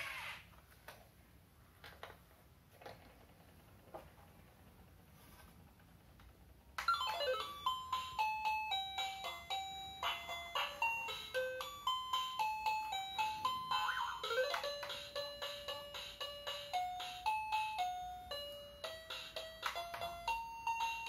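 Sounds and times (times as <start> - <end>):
toy drill electronic beeping tune: 13.7 - 14.7.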